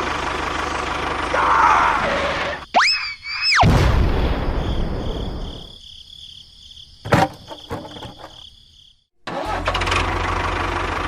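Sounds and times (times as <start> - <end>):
engine idling: 0.0 - 2.6, 9.3 - 11.0.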